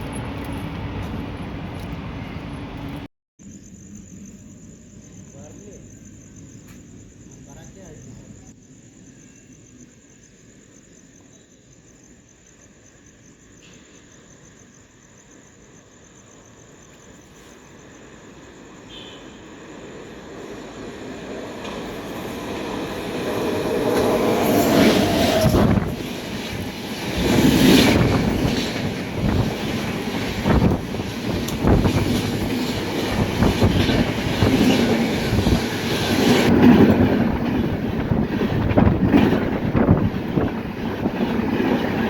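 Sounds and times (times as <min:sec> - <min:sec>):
fast train rumbling on rails: 0:00.0 - 0:03.1, 0:14.6 - 0:42.0.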